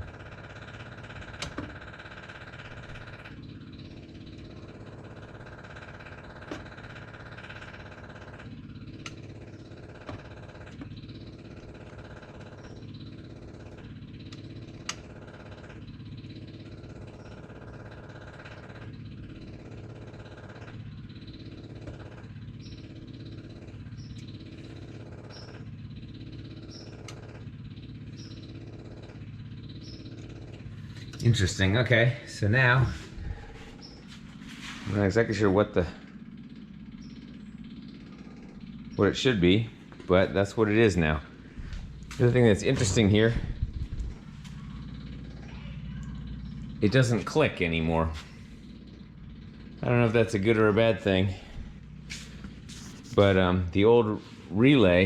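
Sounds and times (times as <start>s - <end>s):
mechanical hum: 0.0s - 55.0s.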